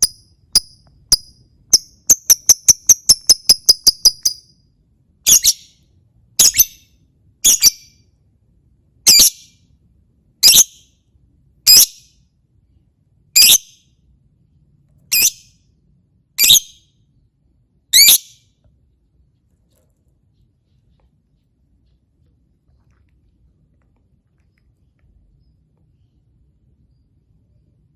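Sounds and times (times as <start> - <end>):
lovebird shrill calls: 0.0 - 4.4, 5.3 - 5.7, 6.4 - 6.8, 7.4 - 7.8, 9.1 - 9.4, 10.4 - 10.7, 13.4 - 13.7, 15.1 - 15.4, 16.4 - 16.8, 18.0 - 18.4.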